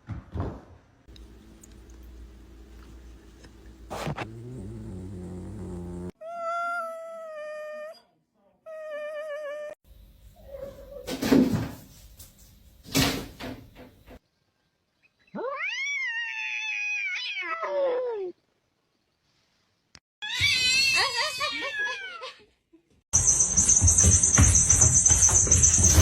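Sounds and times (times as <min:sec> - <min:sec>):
noisy scuffling: 0:23.2 - 0:26.0.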